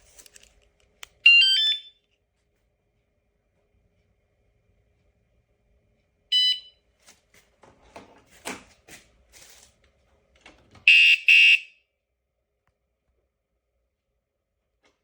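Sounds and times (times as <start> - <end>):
loud electronic alarm blasts: 10.9 - 11.7.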